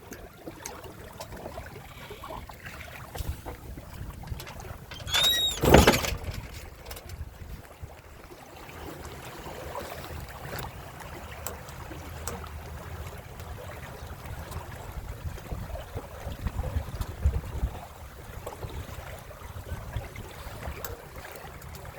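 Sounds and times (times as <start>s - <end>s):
water rushing along boat hulls: 0.0s - 21.9s
wind buffeting microphone: 3.1s - 8.0s, 14.7s - 21.9s.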